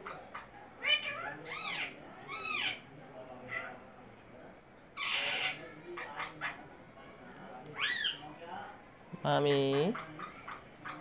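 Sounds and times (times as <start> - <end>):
parrot calling: 0.0 - 2.9, 5.0 - 6.6, 7.7 - 8.3, 9.5 - 11.0.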